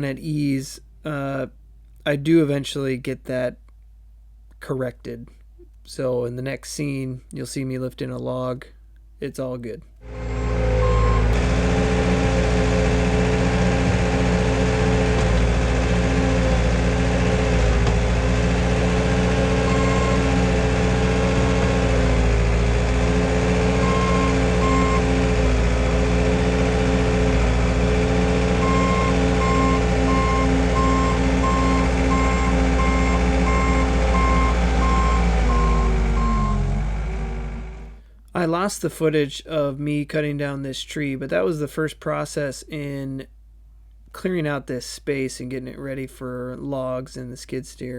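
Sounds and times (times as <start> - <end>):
skid steer engine under load: 10.0 - 38.0
reversing alarm beeping: 10.7 - 11.4, 19.7 - 20.3, 23.8 - 25.1, 28.6 - 36.8.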